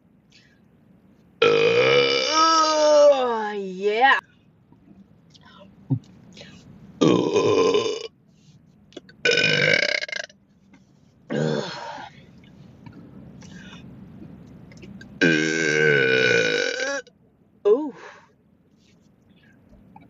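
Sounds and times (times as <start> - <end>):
person burping: 1.4 - 2.5, 7.0 - 8.1, 9.2 - 10.3, 11.3 - 12.0, 15.2 - 17.1.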